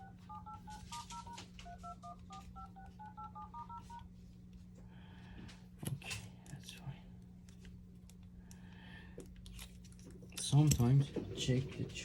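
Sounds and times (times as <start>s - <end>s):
phone keypad touch-tone beeps: 0.0s - 4.0s
faint steady hum: 0.0s - 12.0s.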